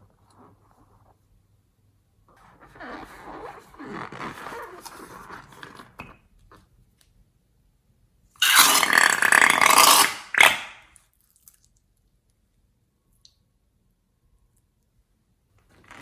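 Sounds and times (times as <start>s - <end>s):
air escaping with squeal: 8.4s - 10.6s
air sputtering out: 8.4s - 10.7s.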